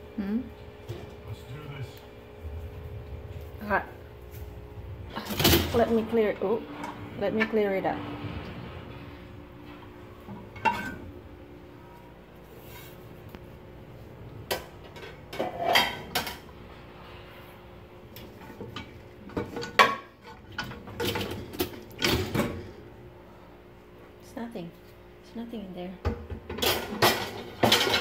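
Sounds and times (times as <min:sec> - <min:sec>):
dishes and cutlery clinking: 0:10.6 - 0:11.0, 0:14.9 - 0:16.4.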